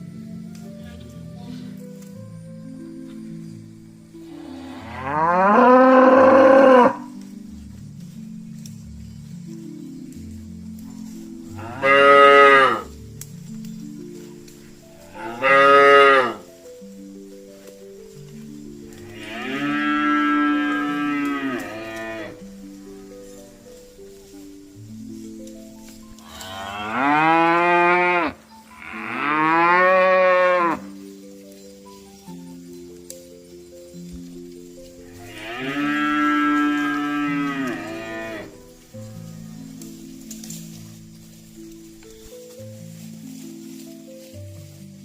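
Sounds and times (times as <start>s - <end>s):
quiet background music: 0.0s - 45.0s
cattle mooing: 4.3s - 7.1s, 11.6s - 12.9s, 15.1s - 16.4s, 19.0s - 22.4s, 26.3s - 30.8s, 35.1s - 38.6s.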